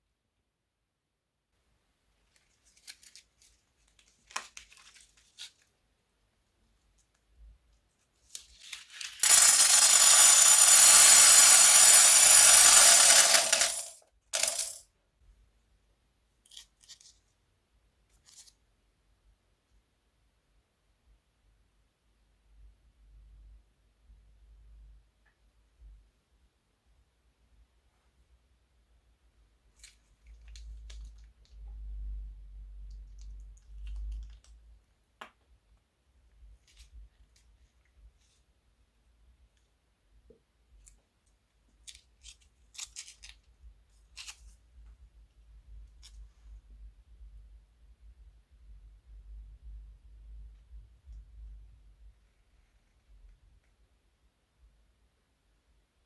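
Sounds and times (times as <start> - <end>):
plastic beads pouring: 9.1 - 14.8.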